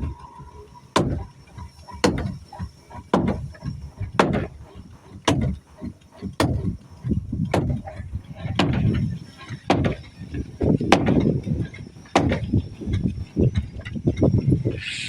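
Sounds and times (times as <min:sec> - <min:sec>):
hand tool striking wood: 0:01.0 - 0:01.3, 0:01.9 - 0:04.5, 0:05.2 - 0:06.8, 0:07.5 - 0:09.0, 0:09.7 - 0:10.0, 0:10.9 - 0:11.2, 0:12.1 - 0:12.5.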